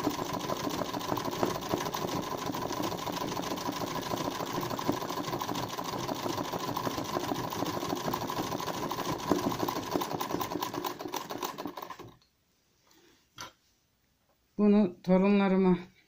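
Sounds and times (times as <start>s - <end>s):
sewing machine needle clatter: 0.0s - 12.3s.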